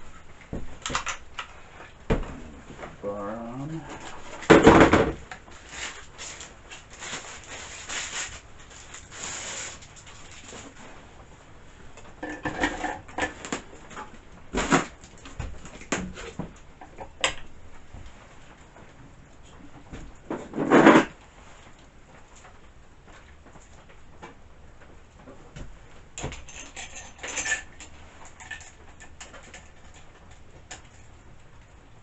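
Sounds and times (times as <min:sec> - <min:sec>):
heavy thump: 0:02.1 - 0:02.9.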